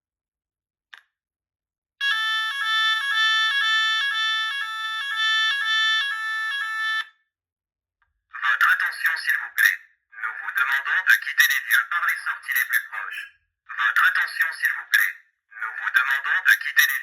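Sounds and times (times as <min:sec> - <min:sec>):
two-pitch alarm tone: 0:02.0 - 0:07.1.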